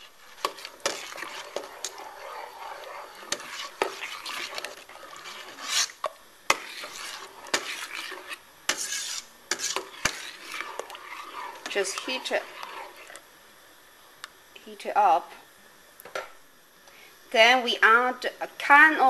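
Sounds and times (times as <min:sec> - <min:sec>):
utensil clinking and scraping pan: 0:00.0 - 0:13.2
utensil stirring soup in a pan: 0:00.0 - 0:13.5.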